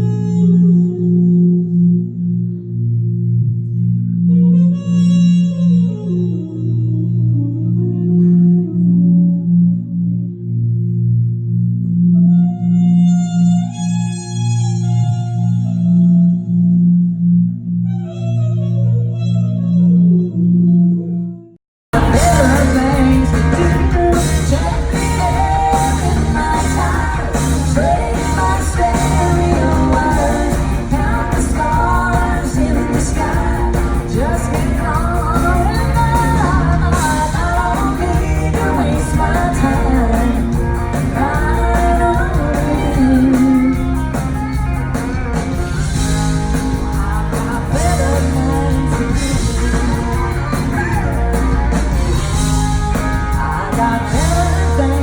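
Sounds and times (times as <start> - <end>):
heavy bass: 0.0 - 55.0
drum beat: 21.9 - 54.9
live band with singer: 22.0 - 55.0.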